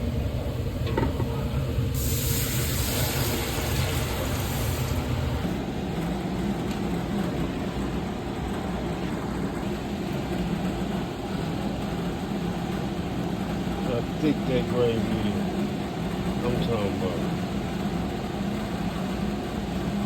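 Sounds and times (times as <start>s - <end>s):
water hissing into hot pot: 2.0s - 5.4s.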